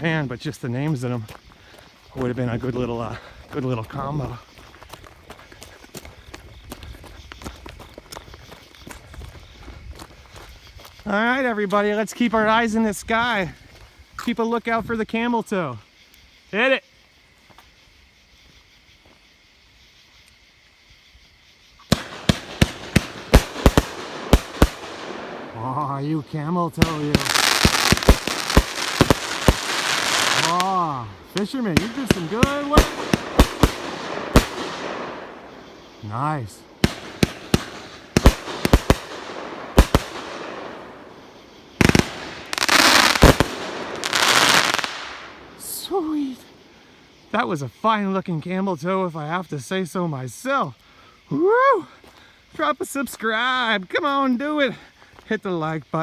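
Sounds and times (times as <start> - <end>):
faint background hiss: 10.6 - 56.0
rattle of firework shots: 21.9 - 26.1, 26.7 - 36.0, 36.6 - 45.5
firework cake firing: 22.0 - 25.9, 26.8 - 35.5, 36.8 - 41.2, 41.8 - 45.3
firework cake shots: 36.8 - 40.8.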